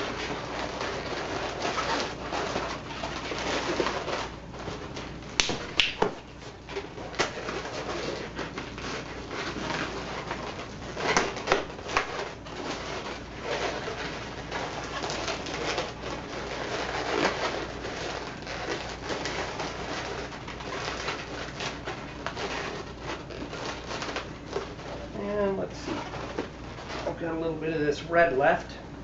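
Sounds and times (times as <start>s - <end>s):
balloons rubbing and squeaking: 0.0s - 28.0s
sharp snaps: 5.4s - 6.2s.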